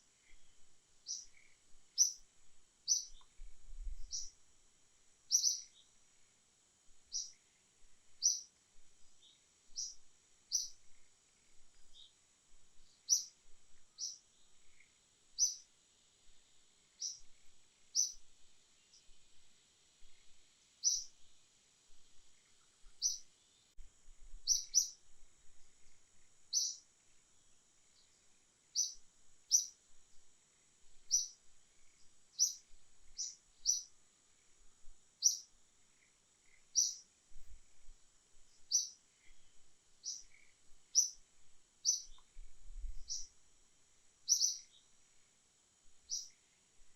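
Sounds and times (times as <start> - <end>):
insect drone: 0.0 - 46.9
bird chirping: 0.2 - 4.4, 5.3 - 6.0, 7.1 - 7.5, 8.1 - 12.2, 12.8 - 15.7, 16.9 - 19.2, 20.0 - 21.2, 22.4 - 23.8, 24.4 - 25.0, 26.5 - 26.9, 27.9 - 29.8, 31.0 - 34.0, 35.2 - 37.1, 38.5 - 41.2, 41.8 - 43.3, 44.2 - 44.9, 46.0 - 46.5.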